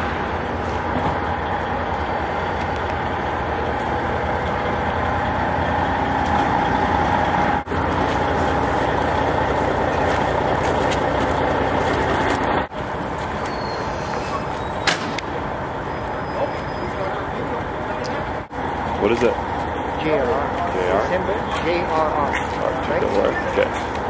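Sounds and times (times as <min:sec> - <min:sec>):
low hum: 0:00.0 - 0:13.4.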